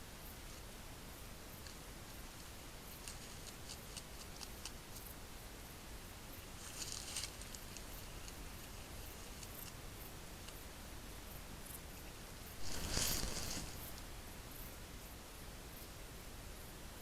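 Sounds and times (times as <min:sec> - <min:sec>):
steady hiss: 0:00.0 - 0:17.0
rustling: 0:06.6 - 0:09.8, 0:12.4 - 0:14.2.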